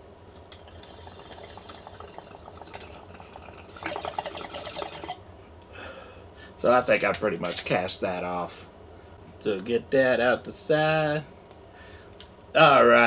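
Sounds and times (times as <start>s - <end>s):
water bubbling in a bong: 0.3s - 5.2s.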